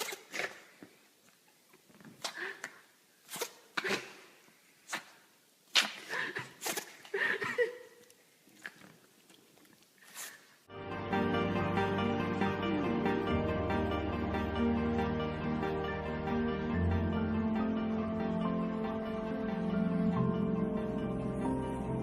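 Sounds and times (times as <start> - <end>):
animal sneezing: 5.8 - 7.1.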